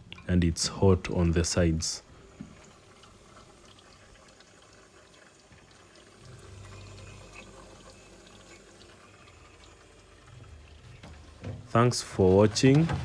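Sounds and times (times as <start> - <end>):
low hum: 0.0 - 13.0
refrigerant hissing and gurgling: 0.0 - 13.0.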